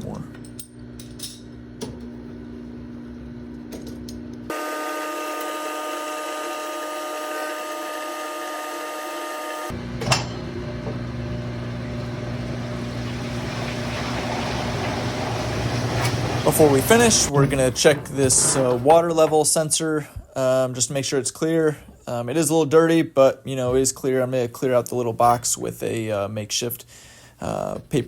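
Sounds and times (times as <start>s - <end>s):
drain pump motor hum: 0.0s - 19.6s.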